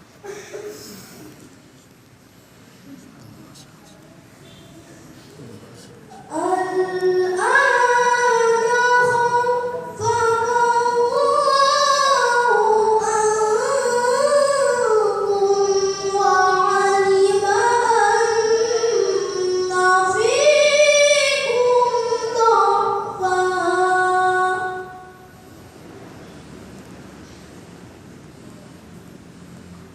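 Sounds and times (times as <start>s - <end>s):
boy reciting melodically: 2.9s - 25.5s.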